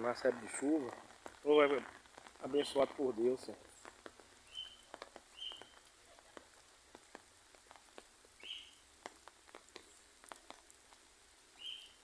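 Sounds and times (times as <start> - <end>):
light rain: 0.0 - 12.0
raindrops ticking faintly: 0.0 - 12.0
bird chirps: 3.8 - 5.8, 8.4 - 8.8, 11.6 - 12.0.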